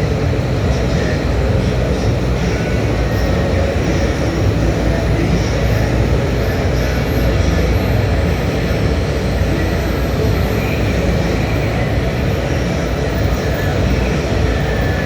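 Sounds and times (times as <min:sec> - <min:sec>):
furnace machine rumble and hiss: 0:00.0 - 0:15.0.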